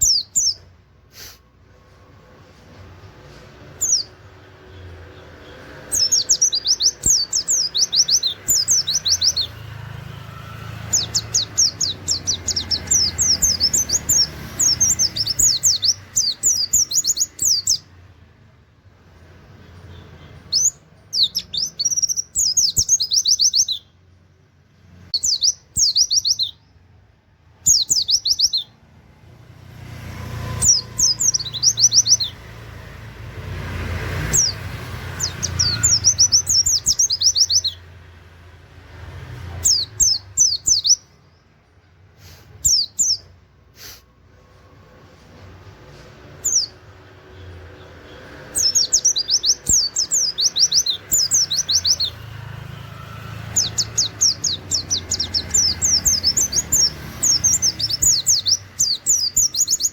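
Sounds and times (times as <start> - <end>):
bird singing fast high notes: 5.8 - 17.9.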